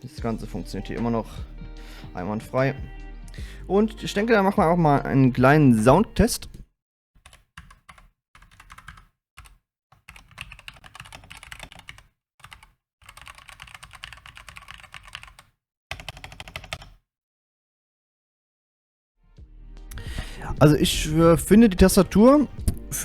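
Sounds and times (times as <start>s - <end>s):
mechanical keyboard typing: 7.2s - 17.0s.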